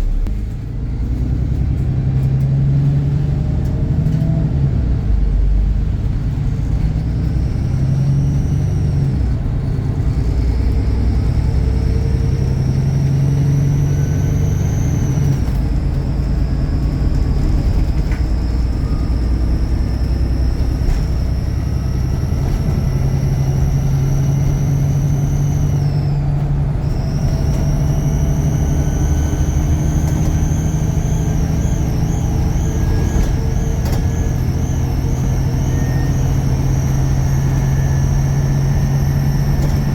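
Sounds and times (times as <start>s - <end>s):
bus diesel engine rumble: 0.0s - 39.9s
turbocharger whistle: 10.3s - 39.9s.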